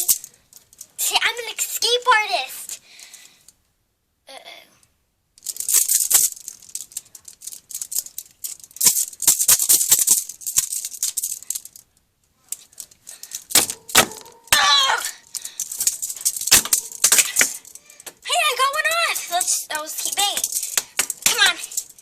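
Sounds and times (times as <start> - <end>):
metal handcuffs rattling: 0.0 - 1.0, 5.4 - 22.0.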